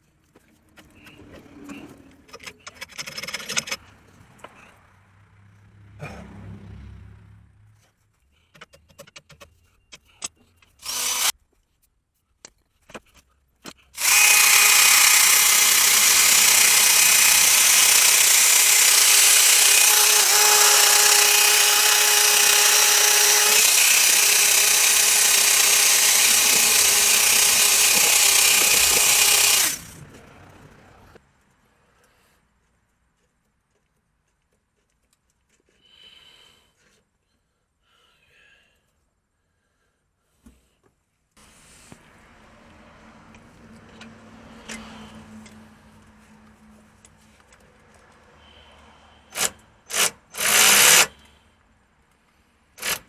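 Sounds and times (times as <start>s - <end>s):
impact wrench running: 10.8s - 11.3s, 14.0s - 30.0s, 49.3s - 51.2s, 52.8s - 53.0s.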